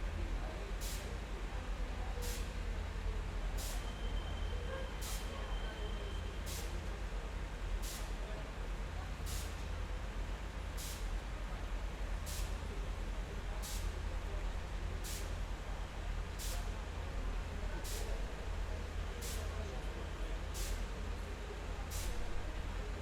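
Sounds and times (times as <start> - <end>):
short hiss: 6.5 - 6.7.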